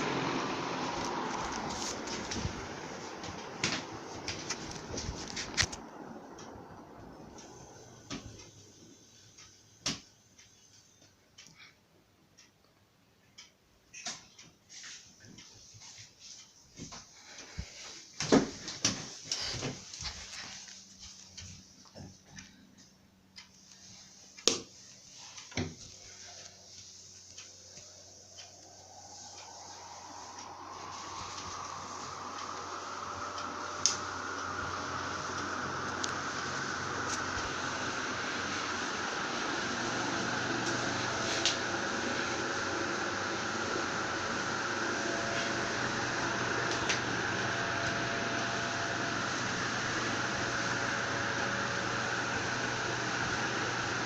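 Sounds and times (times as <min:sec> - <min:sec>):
ceiling fan air noise: 0:00.0 - 0:54.0
low steady hum: 0:19.3 - 0:54.0.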